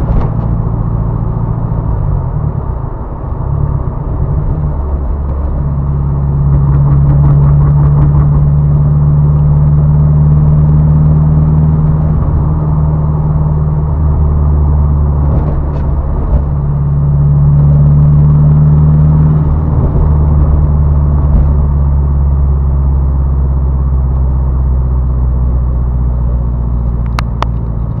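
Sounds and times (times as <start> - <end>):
car engine idling: 0.0 - 28.0.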